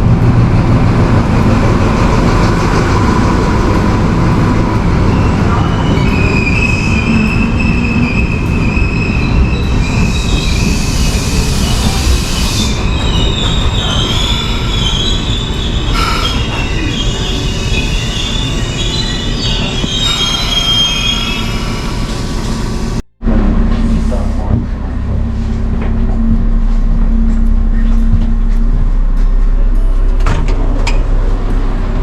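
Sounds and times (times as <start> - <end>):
train rumbling on rails: 0.0 - 32.0
metallic wheel squeals: 1.1 - 23.0.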